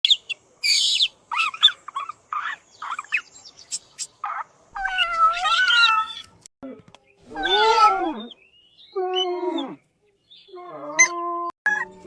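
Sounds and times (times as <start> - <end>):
small bird chirping: 0.0 - 6.3.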